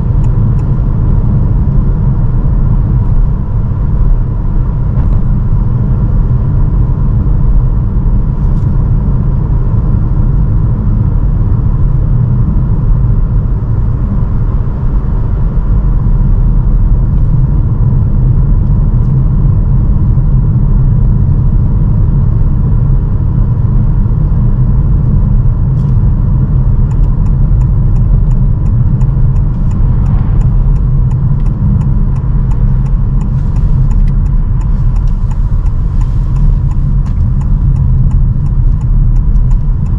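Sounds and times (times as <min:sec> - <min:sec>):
road and wind rumble in car: 0:00.0 - 0:39.9
quick regular ticking: 0:26.9 - 0:39.9.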